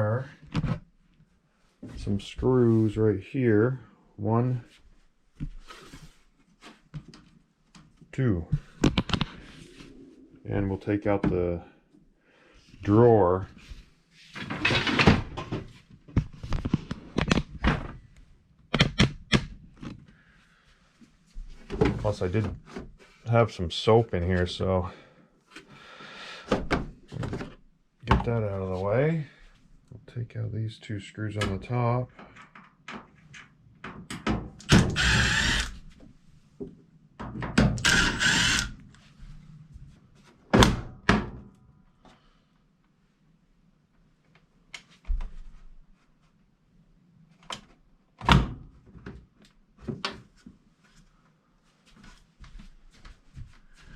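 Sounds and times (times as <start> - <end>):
power drill whirring: 34.6 - 35.8, 37.8 - 38.8.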